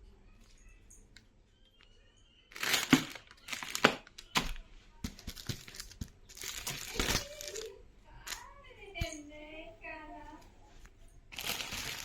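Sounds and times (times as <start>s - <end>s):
packaging crinkling: 2.5s - 8.5s, 11.3s - 12.0s.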